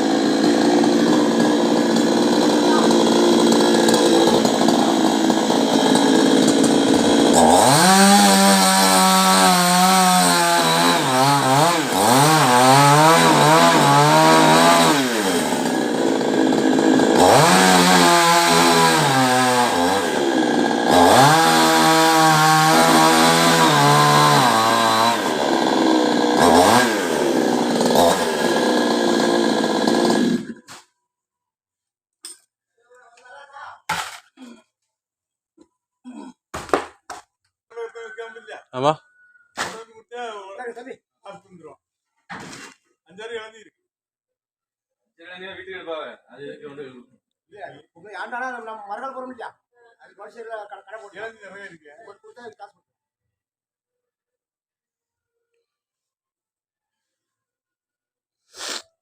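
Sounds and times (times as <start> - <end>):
chainsaw cutting and revving: 0.0 - 30.9.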